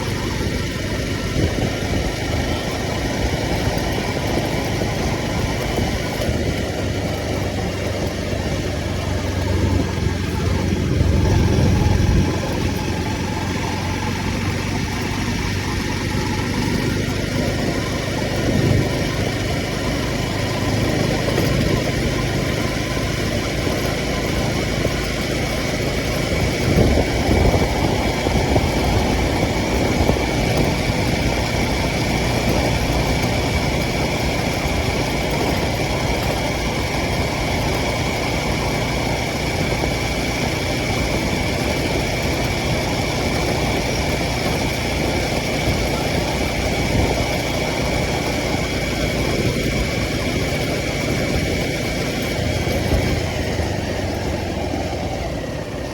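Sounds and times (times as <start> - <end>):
motorcycle engine at low revs: 0.0 - 55.9
road and traffic noise: 0.0 - 55.9
steady thin whine: 5.0 - 16.7.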